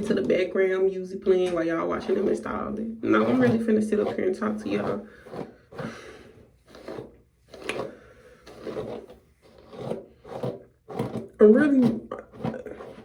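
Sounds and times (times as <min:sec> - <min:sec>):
brush bristles rasping through hair: 0:03.2 - 0:11.3.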